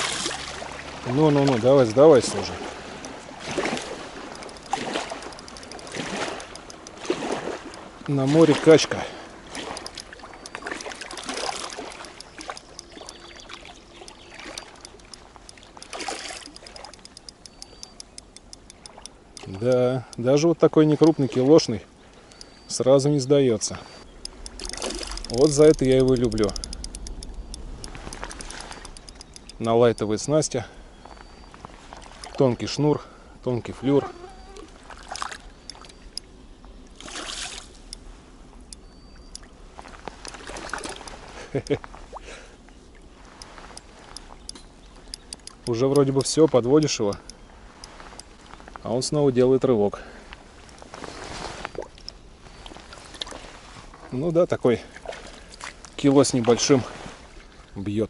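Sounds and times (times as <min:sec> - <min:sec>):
water splashing and trickling: 0:00.0 - 0:58.0
light clicks: 0:04.2 - 0:08.2, 0:09.3 - 0:32.4, 0:34.5 - 0:42.0, 0:42.6 - 0:48.9, 0:50.3 - 0:53.9
short sharp clicks: 0:24.1 - 0:30.3.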